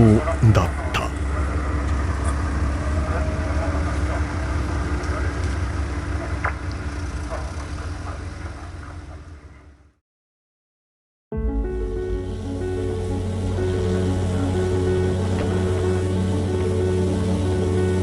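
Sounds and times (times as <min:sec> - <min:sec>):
boat engine rumbling: 0:11.5 - 0:18.0.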